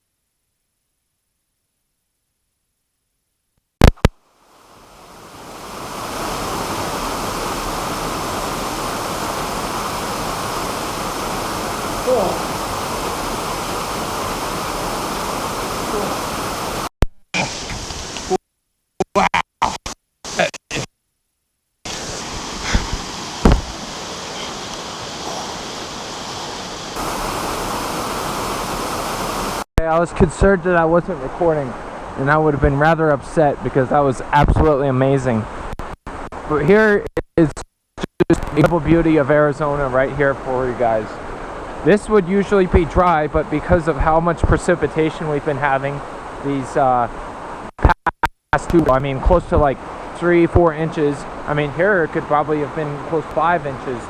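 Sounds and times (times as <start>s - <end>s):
sharp click: 3.8s - 4.2s
waterfall rushing: 4.5s - 18.4s, 21.9s - 29.6s
short thumps: 22.6s - 23.8s.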